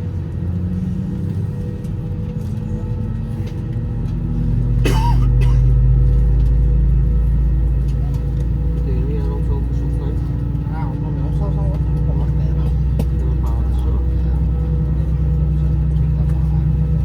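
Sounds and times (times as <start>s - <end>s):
aircraft cabin rumble: 0.0s - 17.0s
droning systems hum: 0.0s - 17.0s.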